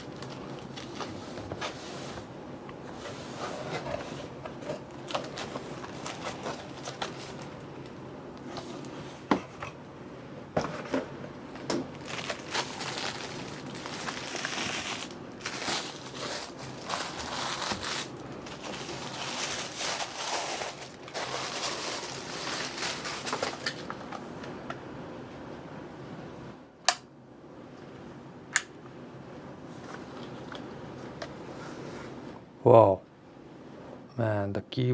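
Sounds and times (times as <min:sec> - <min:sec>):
packing crinkling and rustling: 0:00.0 - 0:01.8, 0:04.8 - 0:07.6, 0:11.8 - 0:24.0.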